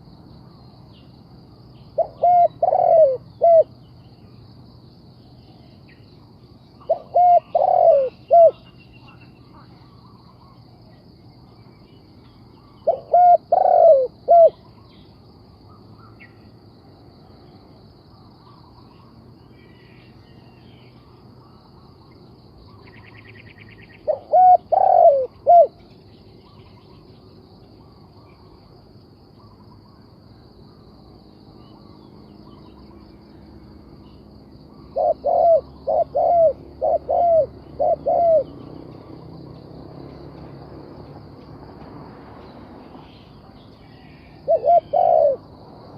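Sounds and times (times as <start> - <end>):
faint insect drone: 0.0 - 45.9
dove cooing: 2.0 - 3.7, 6.8 - 8.7, 12.8 - 14.7, 24.0 - 25.8, 34.7 - 38.6, 44.0 - 45.4.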